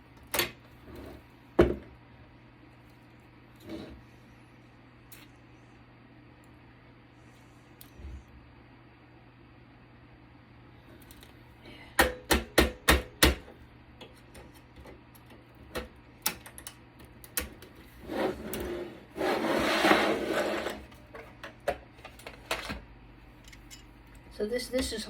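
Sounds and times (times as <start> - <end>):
scraping rub: 17.9 - 20.9.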